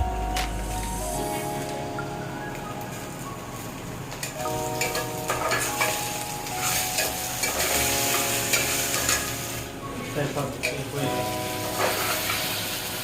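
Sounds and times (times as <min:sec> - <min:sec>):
food sizzling in a pan: 0:04.3 - 0:13.0
spoon scraping a pan: 0:11.8 - 0:12.4.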